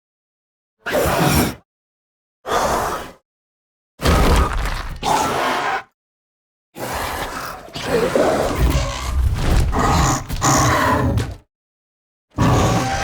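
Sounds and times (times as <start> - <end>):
raspy growling creature calls: 12.4 - 13.0.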